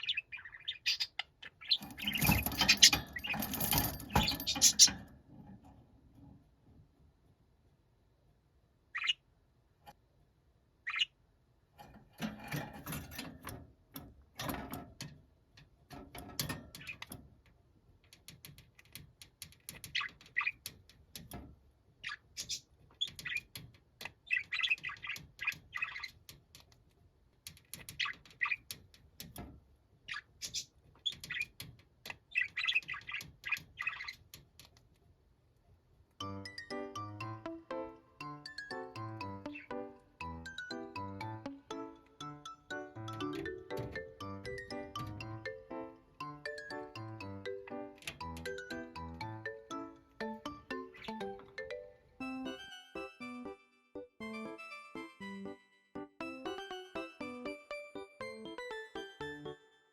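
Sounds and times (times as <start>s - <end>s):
budgerigar chirping: 0.0s - 3.4s, 4.2s - 5.0s, 8.9s - 9.3s, 10.8s - 11.2s.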